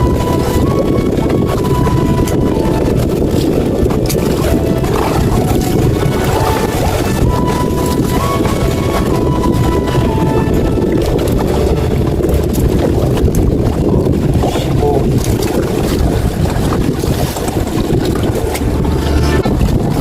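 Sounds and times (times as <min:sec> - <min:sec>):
motorboat engine rumble: 0:00.0 - 0:20.0
water noise: 0:00.0 - 0:20.0
wind buffeting microphone: 0:00.0 - 0:20.0.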